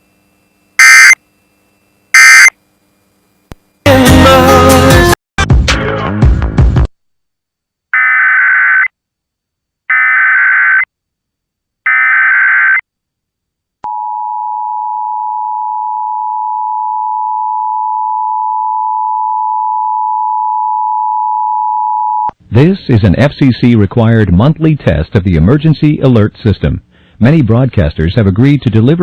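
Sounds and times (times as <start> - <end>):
screeching digital data bursts: 0.8 - 1.2, 2.2 - 2.5
two-tone attention signal: 0.8 - 1.2, 2.2 - 2.5.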